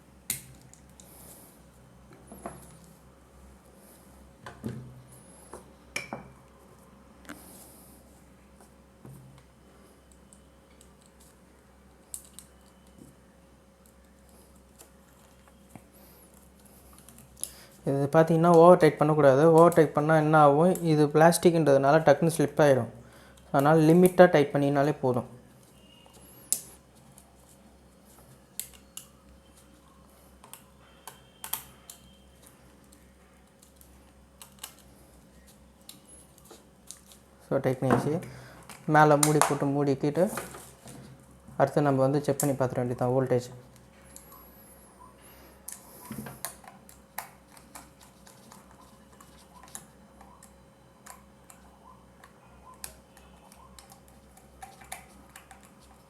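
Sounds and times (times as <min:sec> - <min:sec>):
plastic parts clicking and handling: 0:45.7 - 0:56.0.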